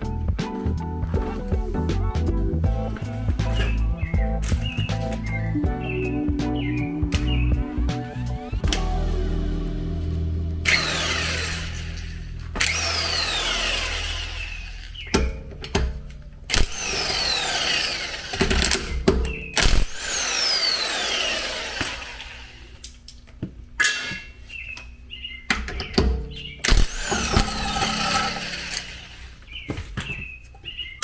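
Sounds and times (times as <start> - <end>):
impact wrench whining: 2.7 - 22.8, 25.8 - 30.0.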